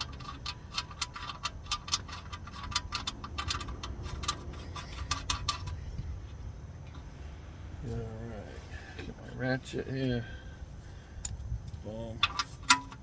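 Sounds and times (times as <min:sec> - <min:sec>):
metallic clicks and clinks: 0:00.0 - 0:05.8.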